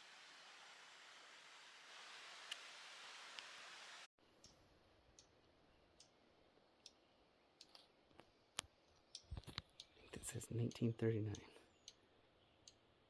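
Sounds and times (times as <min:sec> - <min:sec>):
faint hiss: 0:00.0 - 0:04.1.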